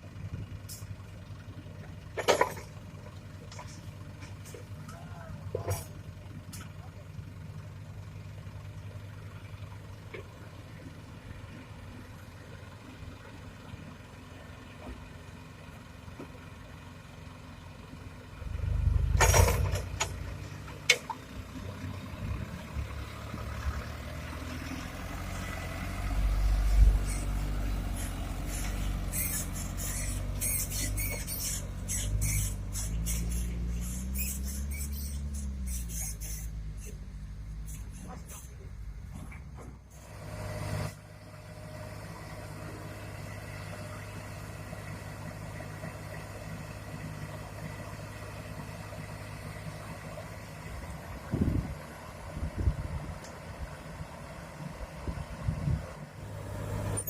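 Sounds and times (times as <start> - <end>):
diesel machinery engine: 0.0 - 57.0
sharp clunks: 19.1 - 20.2
rapid squeaky clicking: 28.0 - 37.0.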